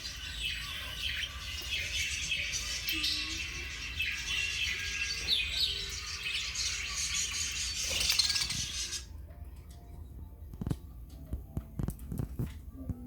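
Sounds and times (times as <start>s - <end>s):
budgerigars chattering and warbling: 0.0s - 9.1s.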